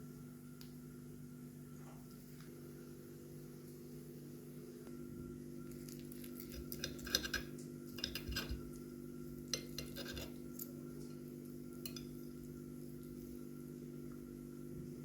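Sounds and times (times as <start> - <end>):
steady low hum: 0.0 - 15.0
cutlery scraping on plate: 6.4 - 8.7, 9.5 - 10.7.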